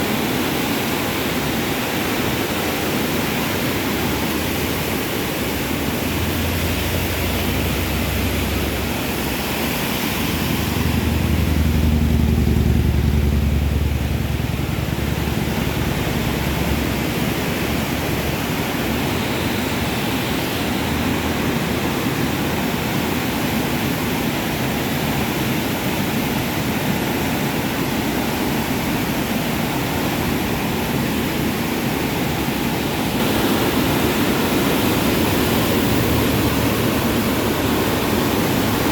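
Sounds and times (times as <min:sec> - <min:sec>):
floodwater rushing: 0:00.0 - 0:38.9
low rumble: 0:10.3 - 0:18.4.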